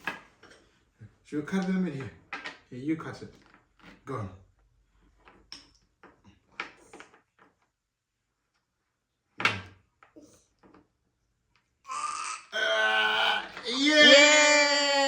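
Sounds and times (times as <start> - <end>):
wooden toys knocking: 1.5 - 2.7.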